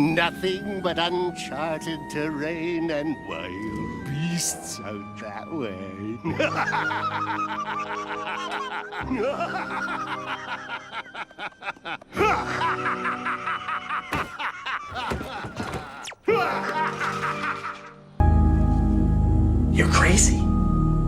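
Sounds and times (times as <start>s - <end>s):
background music: 0.0s - 21.0s
person laughing in rapid bursts: 6.3s - 18.0s.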